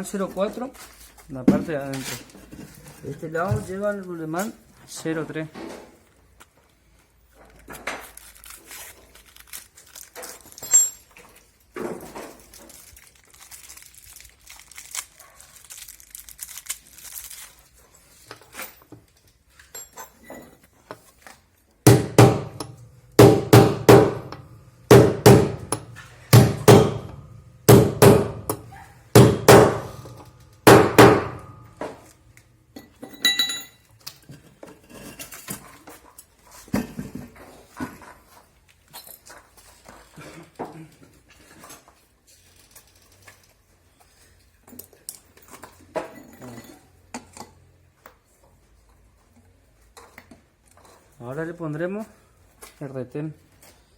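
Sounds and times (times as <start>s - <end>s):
metal parts clinking: 8.1s - 11.5s, 18.4s - 20.7s.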